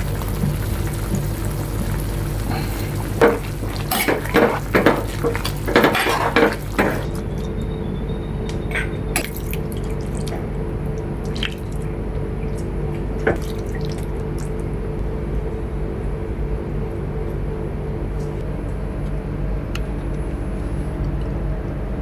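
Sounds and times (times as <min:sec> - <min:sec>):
utensils clattering against pots: 0:00.0 - 0:07.6
steady low hum: 0:00.0 - 0:22.0.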